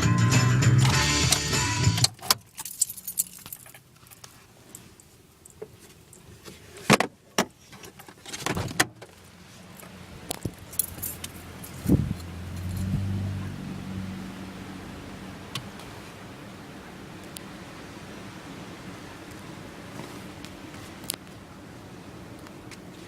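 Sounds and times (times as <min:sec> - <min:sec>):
guitar music: 0:00.0 - 0:02.0
sharp clicks and rattles: 0:10.3 - 0:12.9.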